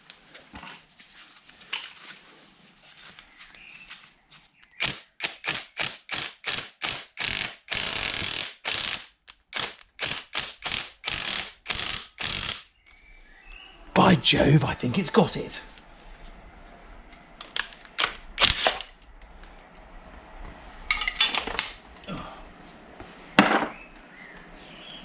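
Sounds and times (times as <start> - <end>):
ratchet wrench clicking: 4.8 - 12.7.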